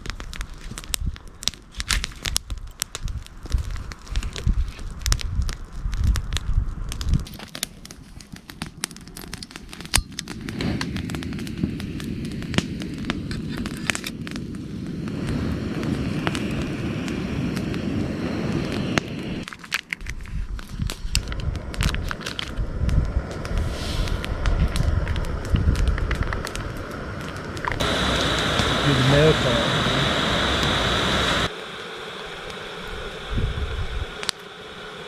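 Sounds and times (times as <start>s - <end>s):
campfire crackling: 0.0s - 35.0s
steady rushing noise: 14.4s - 19.4s, 21.2s - 35.0s
sharp pops: 27.6s - 31.5s.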